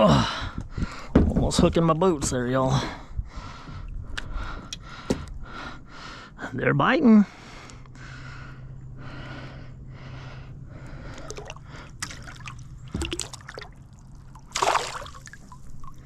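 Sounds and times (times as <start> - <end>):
small knocks: 1.1 - 1.7
water splashing and trickling: 11.0 - 16.0.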